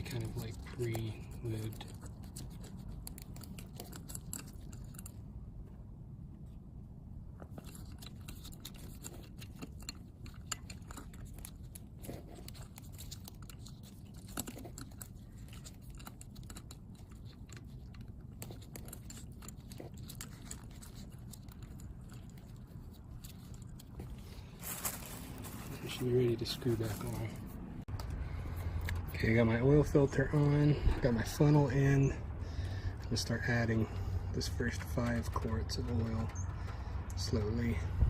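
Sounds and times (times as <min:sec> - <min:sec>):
low steady background rumble: 0:00.0 - 0:38.0
hands handling oil filter: 0:23.0 - 0:29.2.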